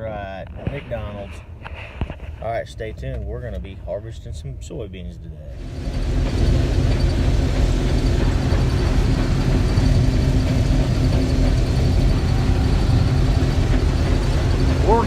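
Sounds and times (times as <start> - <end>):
combine harvester drone: 5.5 - 15.0
faint high whine: 5.6 - 15.0.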